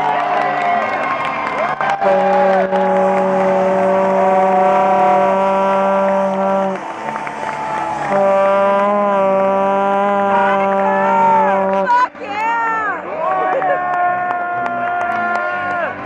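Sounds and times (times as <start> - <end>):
crowd cheering: 0.0 - 16.0
goal horn blasts: 1.9 - 12.2.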